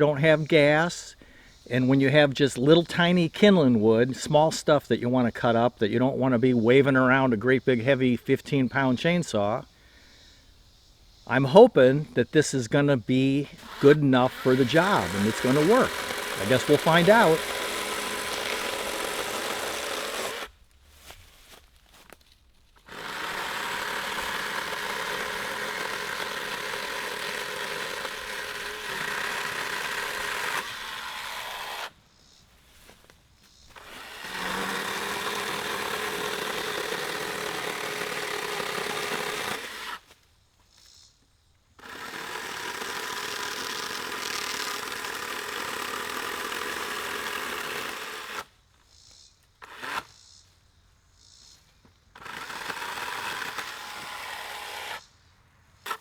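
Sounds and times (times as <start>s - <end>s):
electric chainsaw cutting wood: 13.5s - 20.5s, 22.8s - 31.9s, 33.7s - 40.1s, 41.8s - 48.5s, 49.6s - 50.1s, 52.2s - 55.0s.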